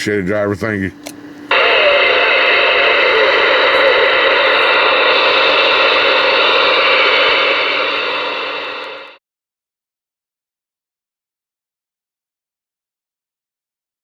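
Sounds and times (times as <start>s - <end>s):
radio receiver static hiss: 1.5s - 9.2s.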